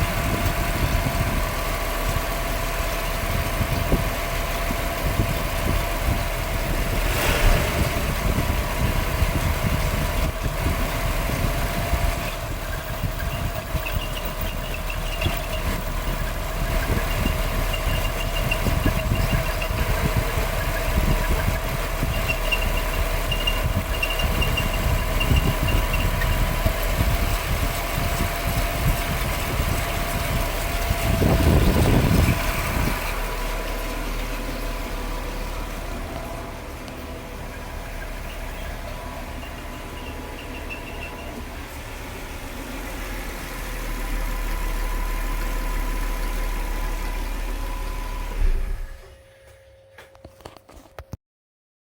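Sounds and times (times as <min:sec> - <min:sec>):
car engine idling: 0:00.0 - 0:49.3
low swell: 0:06.4 - 0:10.3.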